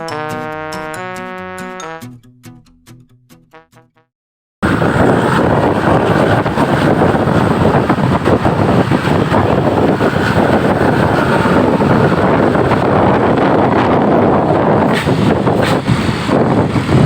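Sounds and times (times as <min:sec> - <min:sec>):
roadside traffic noise: 0:04.6 - 0:17.0
wind buffeting microphone: 0:04.6 - 0:17.0.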